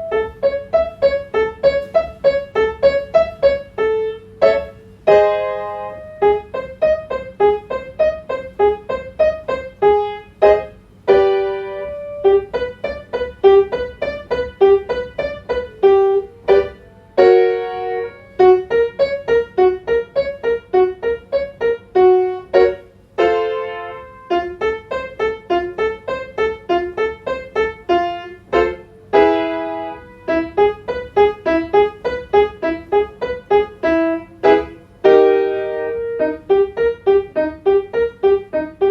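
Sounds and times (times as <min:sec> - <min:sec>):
piano playing staccato notes: 0:00.0 - 0:38.9.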